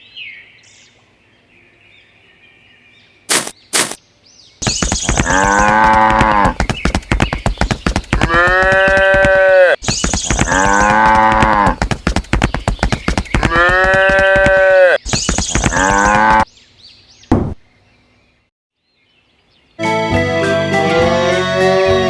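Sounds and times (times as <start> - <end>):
rapid clicking: 4.6 - 9.3, 9.9 - 14.5
cattle mooing: 5.2 - 6.6, 8.2 - 9.8, 10.4 - 11.8, 13.4 - 15.0, 15.7 - 16.4.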